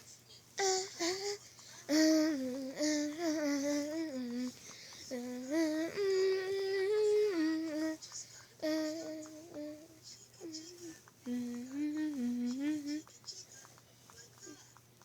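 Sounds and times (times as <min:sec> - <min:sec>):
child humming a tune: 0:00.6 - 0:08.0, 0:08.6 - 0:13.0.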